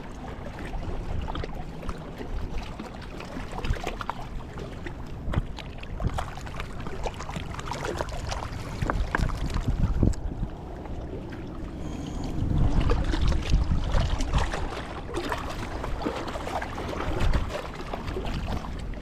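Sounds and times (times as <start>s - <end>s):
water lapping: 0.0s - 19.0s
wind buffeting microphone: 0.0s - 19.0s.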